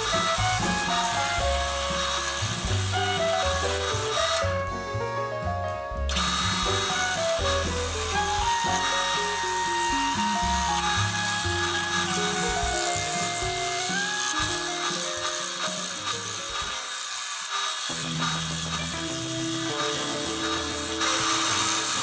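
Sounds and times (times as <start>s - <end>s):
woodworking power tools: 0.0s - 5.1s, 6.0s - 22.0s
background music with held notes: 0.0s - 16.8s, 18.0s - 22.0s.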